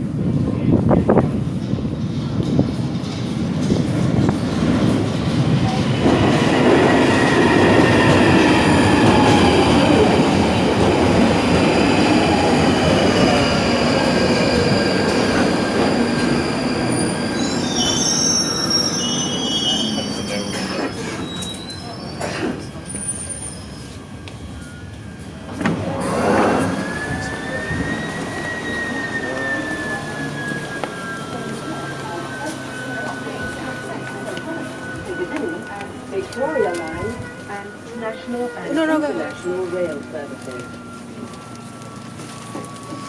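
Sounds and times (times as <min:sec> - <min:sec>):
wheel and brake squeals: 0:11.6 - 0:43.0.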